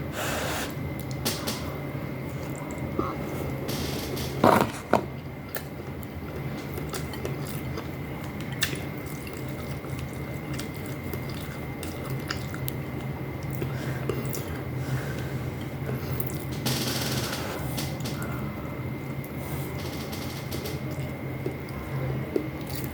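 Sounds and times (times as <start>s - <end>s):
steady low hum: 0.0s - 22.9s
person chewing food: 4.4s - 16.5s, 20.9s - 22.9s.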